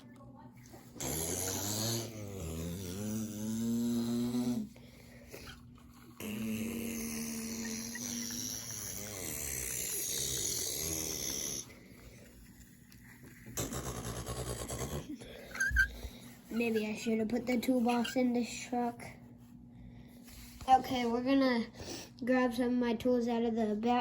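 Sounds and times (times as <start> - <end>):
person imitating engine with voice: 0.9 - 4.7, 6.1 - 11.7, 13.6 - 15.3.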